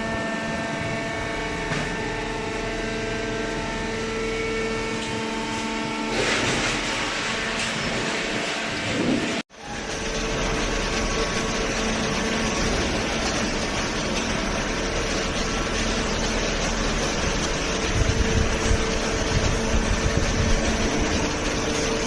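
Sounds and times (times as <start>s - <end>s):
hydraulic motor and pump humming: 0.0s - 22.0s
uneven low rumbling: 7.8s - 22.0s.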